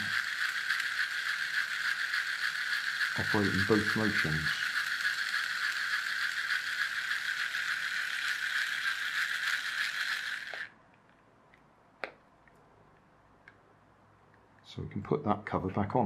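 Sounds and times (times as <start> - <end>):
toy electric motor and gearbox: 0.0 - 10.8.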